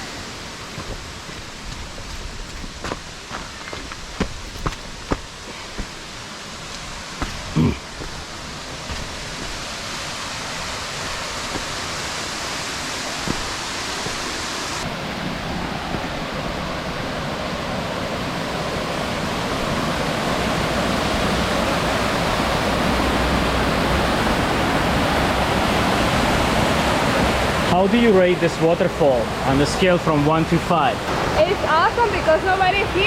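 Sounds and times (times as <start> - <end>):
waterfall rushing: 0.0 - 19.8.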